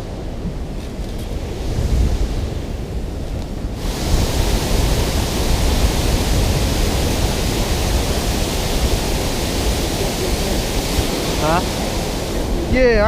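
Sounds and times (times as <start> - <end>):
water rushing through spillway: 3.7 - 13.0.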